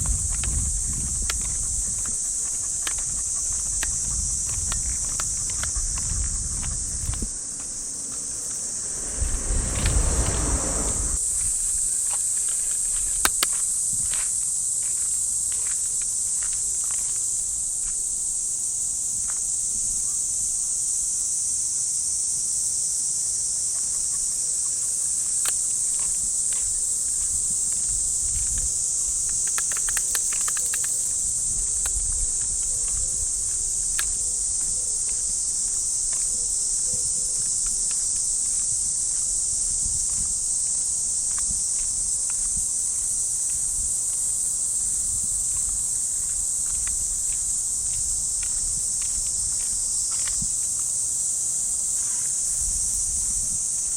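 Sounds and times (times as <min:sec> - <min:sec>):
footsteps on a path: 0:00.0 - 0:18.0, 0:25.3 - 0:52.4
cicadas buzzing: 0:00.0 - 0:53.9.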